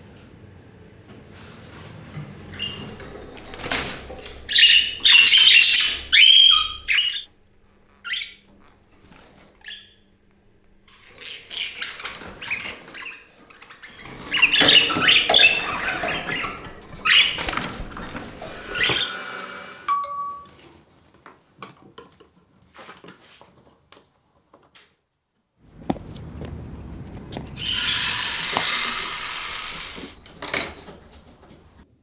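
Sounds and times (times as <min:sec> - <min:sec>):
budgerigars chattering and squawking: 0:04.5 - 0:07.3.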